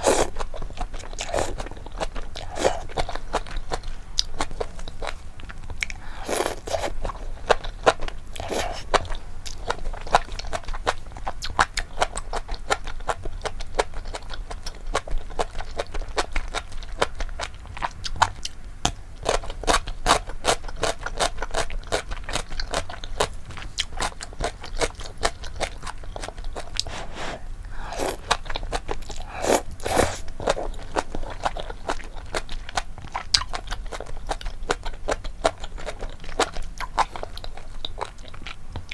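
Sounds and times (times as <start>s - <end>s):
chewing and biting: 0.0s - 18.4s.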